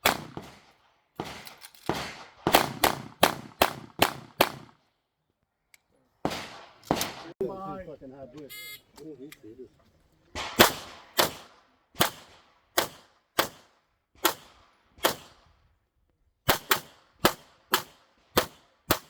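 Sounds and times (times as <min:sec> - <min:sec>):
handgun shots: 0:06.3 - 0:07.3, 0:10.4 - 0:13.6.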